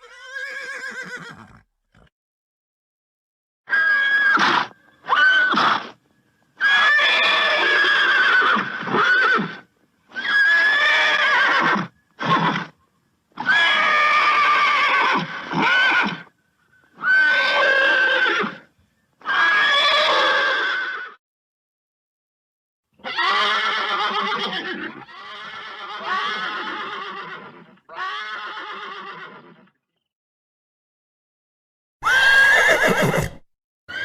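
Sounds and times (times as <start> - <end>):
horse neighing: 0.0 - 2.1, 6.6 - 12.8, 17.0 - 21.2, 23.0 - 29.8, 32.0 - 34.0.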